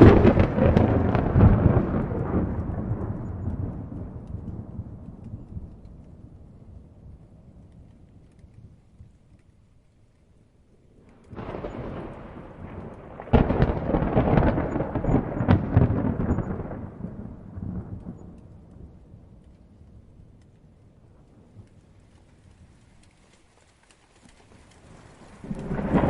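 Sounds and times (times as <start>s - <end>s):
thunder crack: 0.0s - 7.8s, 11.1s - 19.4s, 24.8s - 26.0s
thunder rumbling: 0.0s - 9.7s, 10.6s - 23.2s, 24.3s - 26.0s.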